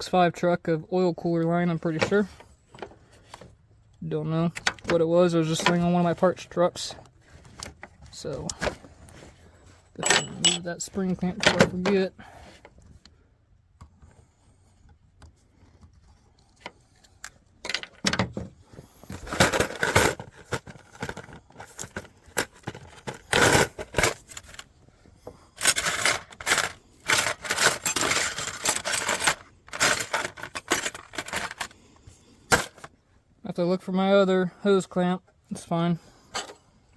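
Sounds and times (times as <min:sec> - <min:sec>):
metal clinking and scraping: 0:08.2 - 0:12.0, 0:19.0 - 0:24.7, 0:25.4 - 0:31.8, 0:32.5 - 0:32.9.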